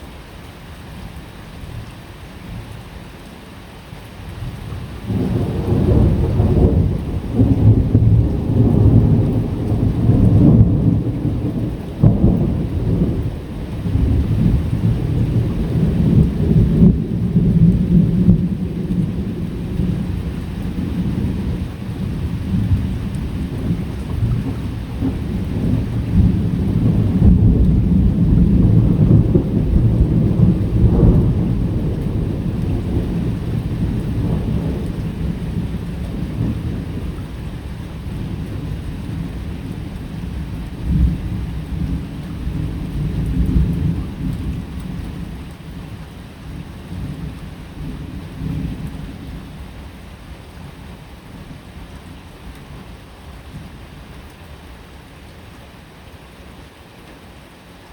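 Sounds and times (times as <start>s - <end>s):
steady rain: 0.0s - 57.9s
thunder rumbling: 5.0s - 45.8s.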